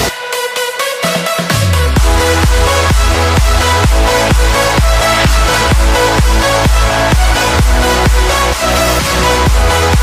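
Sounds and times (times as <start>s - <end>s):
sustained synth chords: 1.9s - 10.0s
deep kick drum beating: 2.0s - 8.4s, 9.5s - 10.0s.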